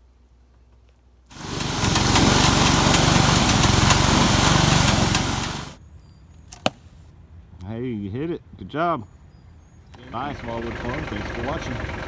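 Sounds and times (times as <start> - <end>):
small engine running: 1.3 - 5.8, 10.1 - 12.0.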